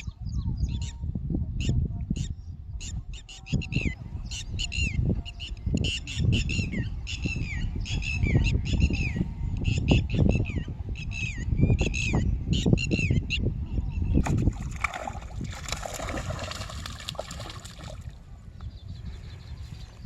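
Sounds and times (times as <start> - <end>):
water splashing: 14.2 - 18.3.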